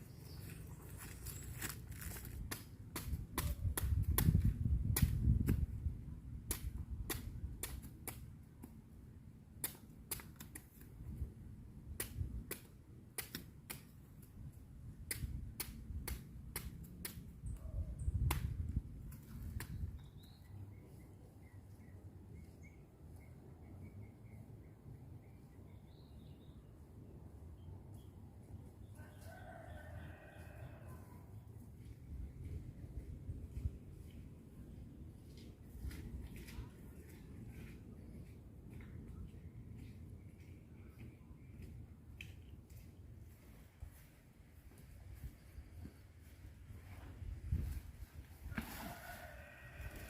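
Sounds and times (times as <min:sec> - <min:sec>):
crop stalks snapping: 0:01.0 - 0:05.7, 0:06.4 - 0:08.8, 0:09.6 - 0:10.9, 0:11.9 - 0:14.3, 0:15.0 - 0:17.3.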